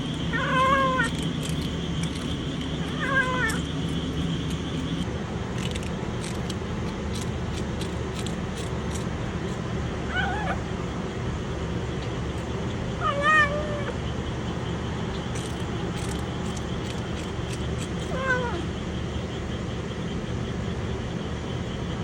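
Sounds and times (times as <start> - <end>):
steady low rumble: 0.0 - 13.0
kitten meowing: 0.3 - 1.2, 2.8 - 3.7, 10.1 - 10.6, 18.1 - 18.6.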